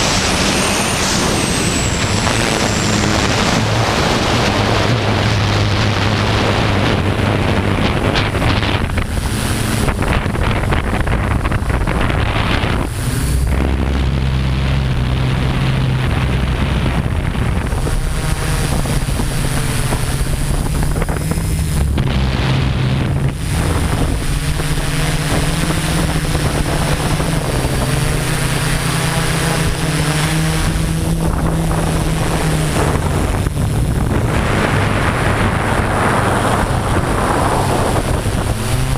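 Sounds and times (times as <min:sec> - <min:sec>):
drone propellers buzzing: 0:00.0 - 0:38.9
wind on microphone: 0:00.0 - 0:38.9.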